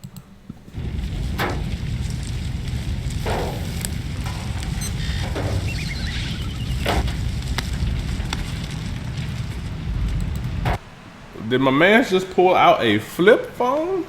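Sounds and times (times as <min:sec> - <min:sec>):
sharp clicks and crackles: 0:00.0 - 0:10.8
low rumble: 0:00.7 - 0:11.3.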